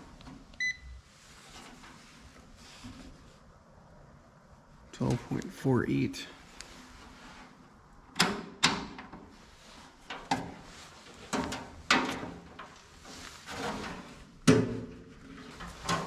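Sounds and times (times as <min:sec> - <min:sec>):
objects knocking and clunking: 0:13.5 - 0:16.0.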